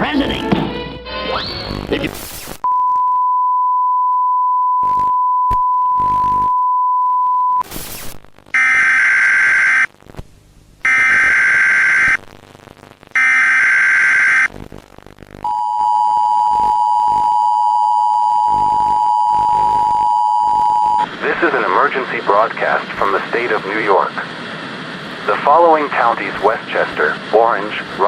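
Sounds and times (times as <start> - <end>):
buzzy data bursts: 1.7 - 2.6, 7.6 - 10.0, 10.8 - 15.7
glitchy static burst: 1.7 - 2.6, 7.6 - 10.1, 10.8 - 15.6
steady high beep tone: 15.5 - 21.1.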